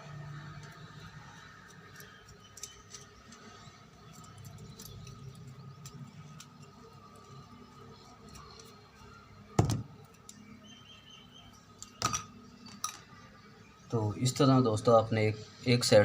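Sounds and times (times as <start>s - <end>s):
clicks of small metal parts: 1.6s - 7.4s.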